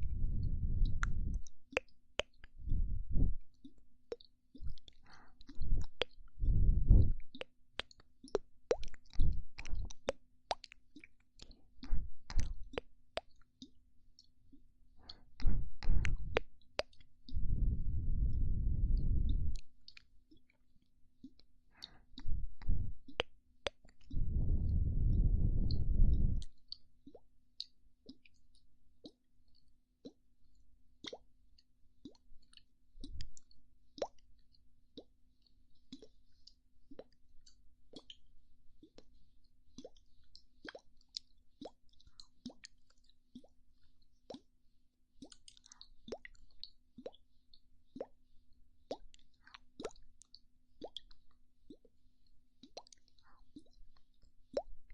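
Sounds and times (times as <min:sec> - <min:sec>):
breath blown onto microphone: 0:00.0 - 0:01.5, 0:02.6 - 0:03.4, 0:05.1 - 0:07.2, 0:15.1 - 0:16.4, 0:17.3 - 0:19.6, 0:24.1 - 0:26.5
mouth pops: 0:00.1 - 0:03.3, 0:04.2 - 0:10.8, 0:11.8 - 0:12.9, 0:15.0 - 0:20.0, 0:21.8 - 0:27.2.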